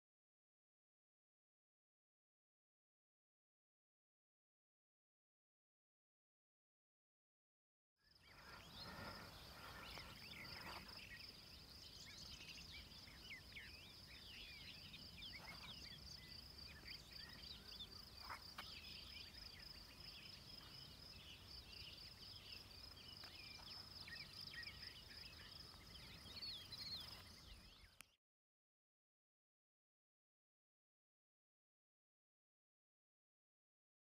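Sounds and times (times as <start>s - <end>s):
bird chirps: 8.0s - 28.2s.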